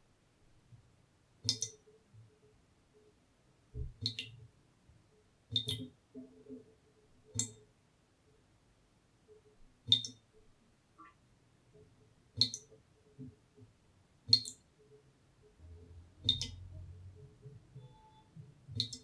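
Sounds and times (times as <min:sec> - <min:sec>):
water dripping from a tap: 0:05.5 - 0:05.9, 0:16.2 - 0:16.8.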